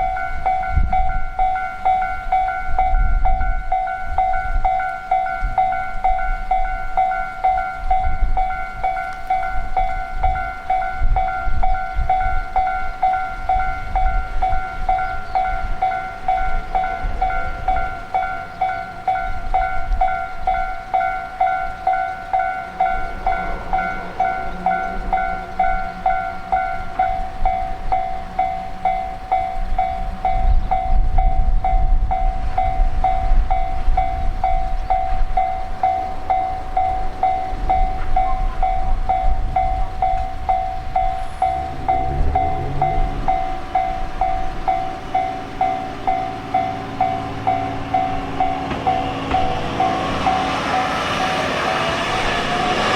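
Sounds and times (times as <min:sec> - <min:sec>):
railroad crossing bell clanging: 0:00.0 - 0:52.9
train rumbling over rails: 0:00.0 - 0:52.9.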